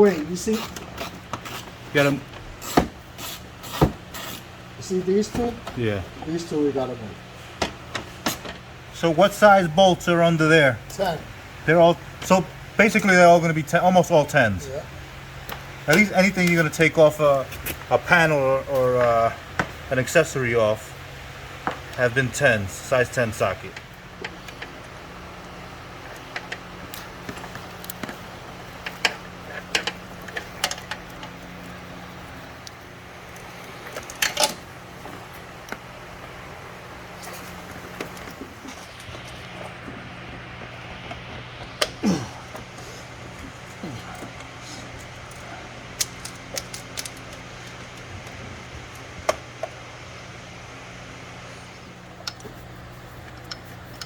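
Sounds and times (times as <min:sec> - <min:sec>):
steady low hum: 0:00.0 - 0:54.0
hand tools and metal parts clicking: 0:26.2 - 0:31.4, 0:32.6 - 0:34.7, 0:43.6 - 0:49.7.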